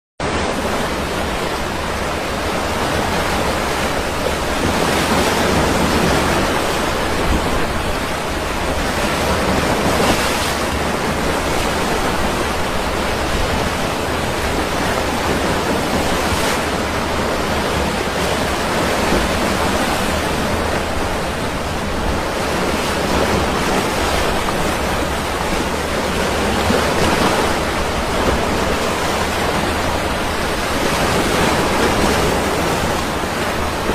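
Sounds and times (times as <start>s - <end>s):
sea waves breaking: 0.2s - 33.9s.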